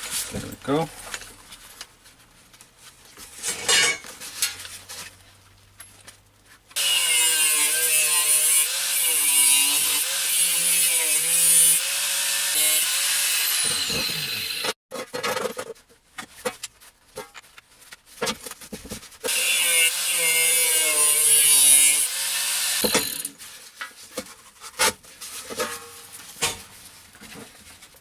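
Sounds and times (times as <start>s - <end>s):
angle grinder grinding steel: 6.8s - 14.8s, 19.3s - 23.4s.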